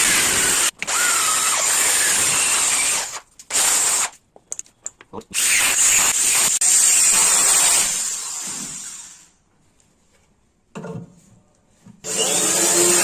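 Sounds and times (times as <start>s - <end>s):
power drill driving screws: 0.0s - 4.1s, 5.4s - 9.3s, 12.1s - 13.0s.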